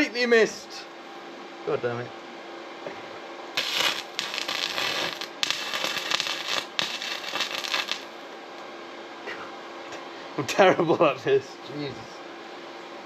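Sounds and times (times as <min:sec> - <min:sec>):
welder arc crackling: 0:03.6 - 0:08.3.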